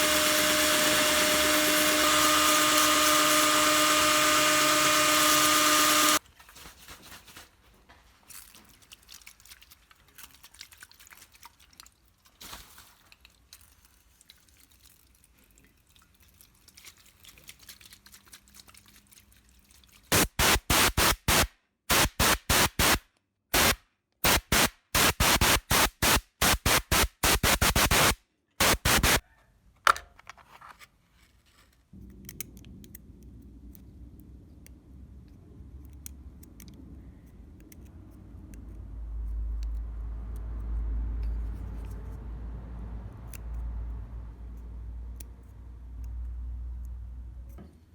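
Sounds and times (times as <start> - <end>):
short spray hisses: 20.1 - 23.0, 23.6 - 29.2.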